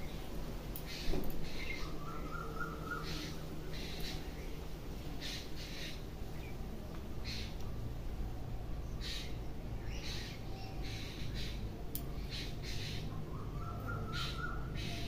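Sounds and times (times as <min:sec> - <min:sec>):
birds giving harsh rasping calls: 0:00.8 - 0:04.6, 0:05.2 - 0:06.1, 0:12.2 - 0:15.0.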